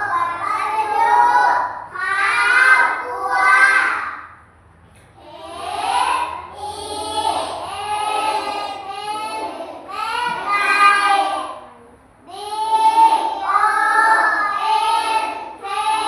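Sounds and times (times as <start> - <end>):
child chanting in sing-song: 0.0 - 4.0, 5.2 - 16.0.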